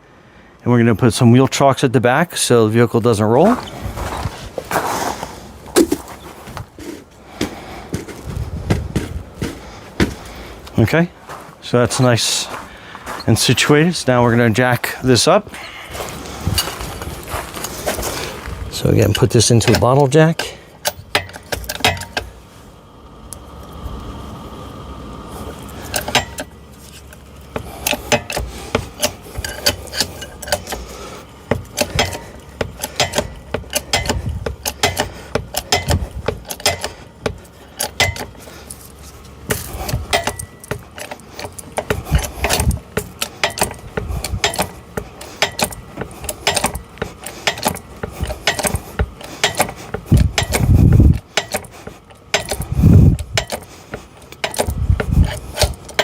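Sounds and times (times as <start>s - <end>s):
heavy thumps: 3.5s - 10.5s, 39.5s - 55.8s
jack handle clicking and clanking: 5.6s - 7.2s, 12.5s - 22.4s, 25.8s - 56.0s.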